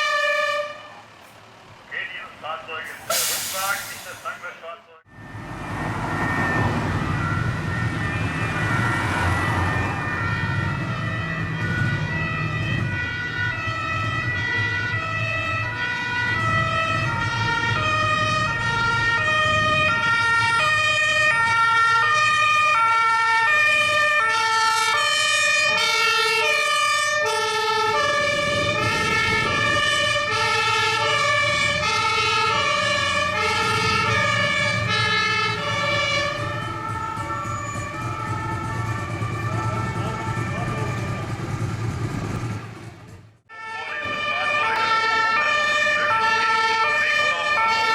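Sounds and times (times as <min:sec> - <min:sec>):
two-tone sirens: 0:00.0 - 0:01.3, 0:01.9 - 0:47.9
vehicle engine rumble: 0:00.8 - 0:21.4, 0:26.8 - 0:43.5.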